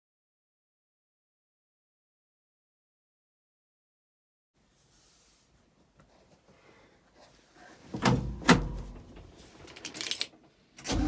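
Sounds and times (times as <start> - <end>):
faint handling noises: 4.6 - 10.6
vehicle door thuds: 8.0 - 9.3.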